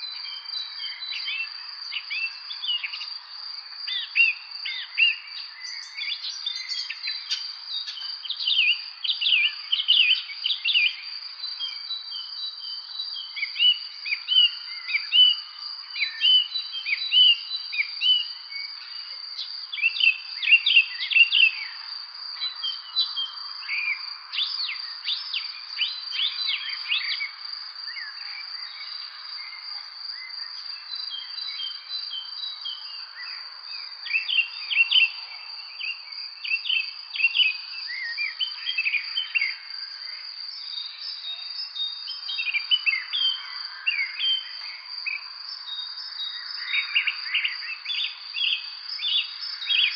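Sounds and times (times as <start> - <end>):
small birds chirping: 0.0 - 49.9.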